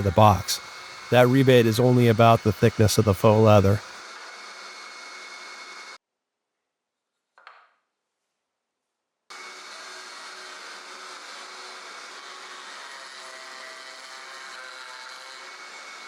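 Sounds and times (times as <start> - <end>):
power tool whirring on wood: 0.0 - 6.0, 9.3 - 16.0.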